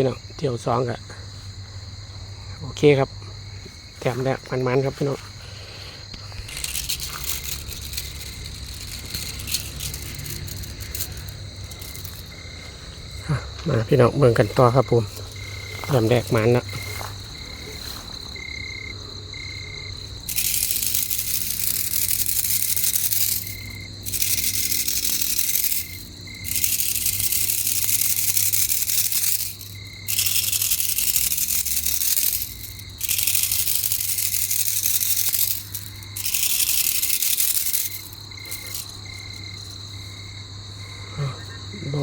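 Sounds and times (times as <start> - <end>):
insects buzzing loudly: 0.0 - 42.0
thin steady high insect note: 0.0 - 42.0.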